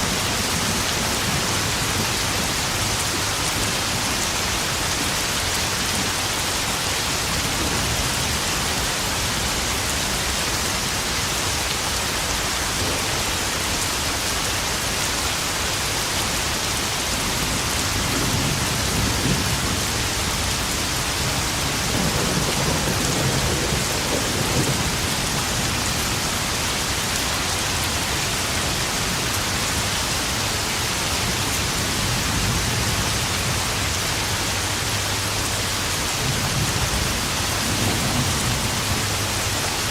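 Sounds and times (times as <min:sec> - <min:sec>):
heavy rain pattering into puddles: 0:00.0 - 0:39.9
thunder rumbling: 0:18.0 - 0:27.0.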